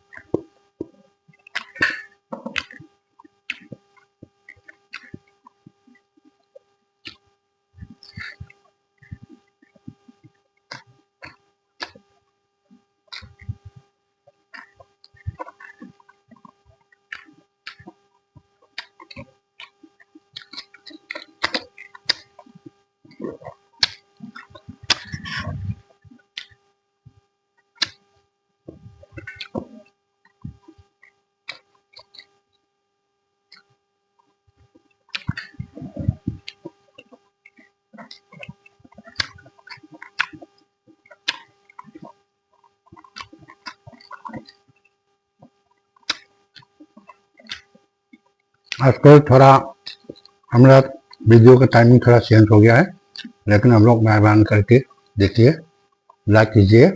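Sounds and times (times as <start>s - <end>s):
faint steady hum: 0.0s - 56.9s
wet chewing and mouth noises: 0.1s - 7.2s, 13.1s - 18.0s, 18.6s - 26.6s, 28.7s - 32.4s, 34.7s - 49.0s.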